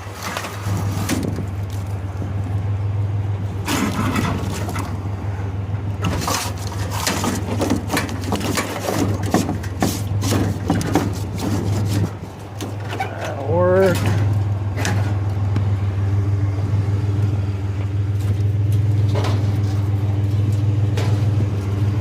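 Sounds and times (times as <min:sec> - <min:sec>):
metal shelves clattering and scraping: 0:00.0 - 0:02.0, 0:03.6 - 0:05.0, 0:06.0 - 0:15.3, 0:18.1 - 0:22.0.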